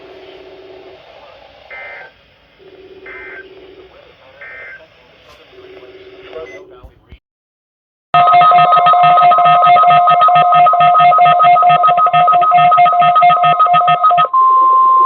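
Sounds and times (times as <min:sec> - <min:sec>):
pulsing electronic alert tone: 0:01.7 - 0:03.5.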